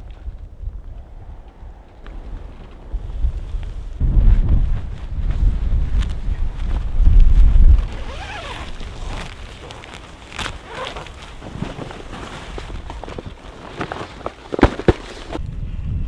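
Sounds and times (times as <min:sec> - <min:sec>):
wind buffeting microphone: 0:00.0 - 0:13.7, 0:14.6 - 0:16.0
rustling with clicks: 0:07.7 - 0:15.4.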